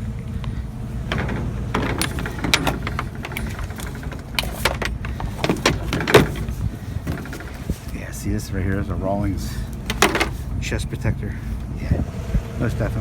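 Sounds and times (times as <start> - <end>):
vehicle engine idling: 0.0 - 13.0
knocks clicks and rattles: 0.5 - 7.9, 9.8 - 10.5.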